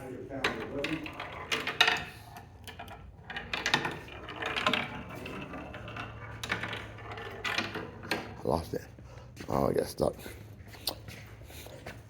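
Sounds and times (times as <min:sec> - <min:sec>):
wooden mechanism clicking and clattering: 0:00.4 - 0:08.6.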